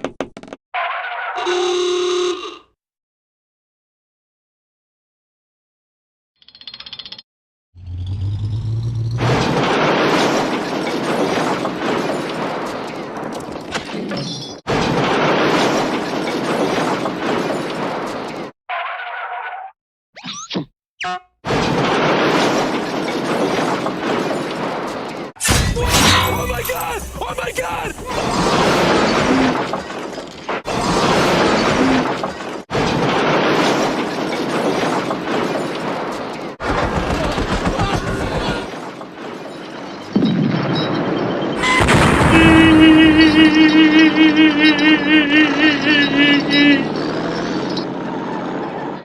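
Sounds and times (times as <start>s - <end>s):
cartoon barrels smashing: 9.2s - 13.3s, 20.2s - 39.4s.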